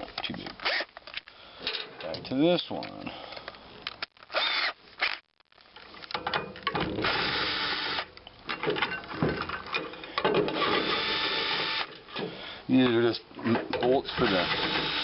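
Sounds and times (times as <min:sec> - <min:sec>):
power drill running: 0:04.3 - 0:05.2, 0:07.0 - 0:08.0, 0:10.6 - 0:11.9, 0:14.1 - 0:15.0.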